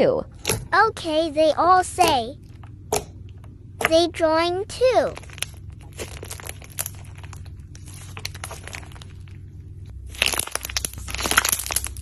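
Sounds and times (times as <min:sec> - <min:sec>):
slime squishing and crackling: 0:04.8 - 0:12.0.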